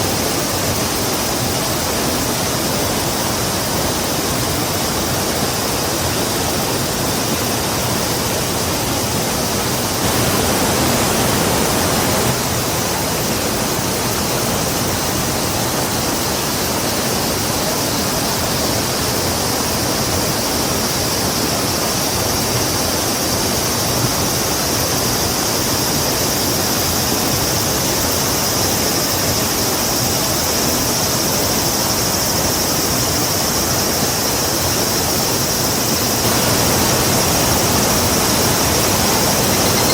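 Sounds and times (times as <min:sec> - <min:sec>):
rushing river water: 0:00.0 - 0:39.9.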